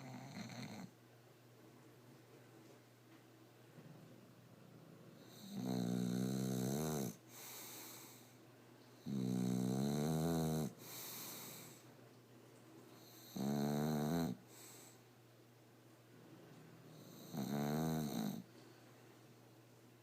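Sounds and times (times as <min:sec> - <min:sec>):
dog snoring: 0:00.0 - 0:01.0, 0:04.8 - 0:08.3, 0:09.0 - 0:11.8, 0:13.0 - 0:15.0, 0:16.9 - 0:18.5.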